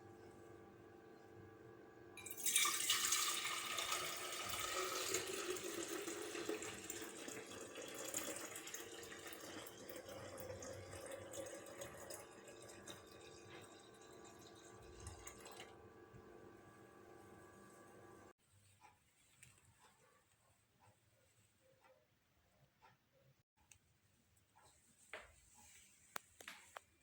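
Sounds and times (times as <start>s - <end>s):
water running from a tap: 2.2s - 15.8s.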